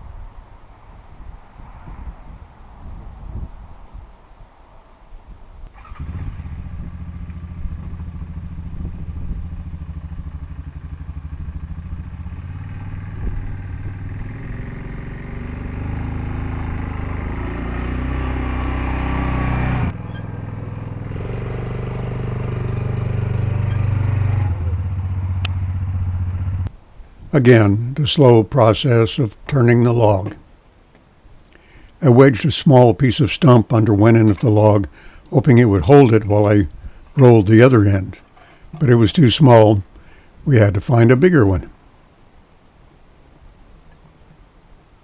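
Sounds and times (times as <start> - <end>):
engine running: 5.8 - 26.7.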